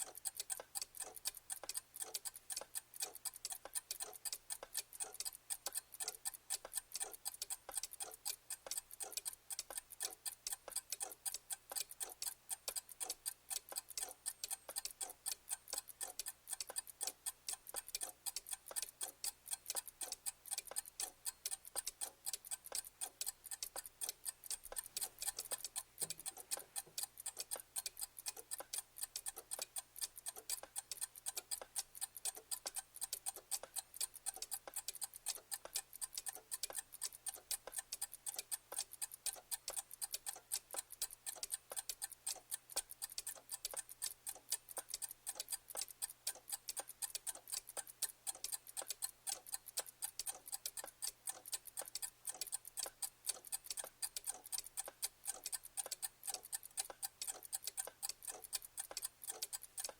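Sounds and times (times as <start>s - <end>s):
mechanical clock ticking: 0.0s - 59.9s.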